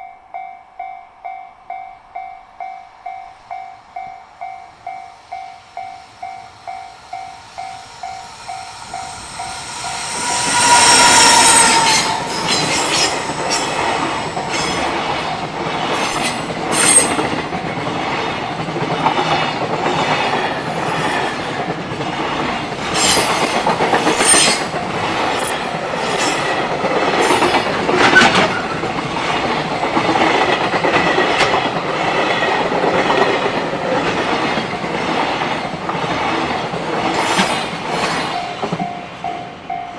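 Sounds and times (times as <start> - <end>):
level-crossing warning bell: 0.0 - 17.9, 37.2 - 39.9
high wheel squeals: 6.9 - 17.4, 22.6 - 28.8, 37.2 - 39.0
train wheels clattering over rail joints: 11.4 - 38.9.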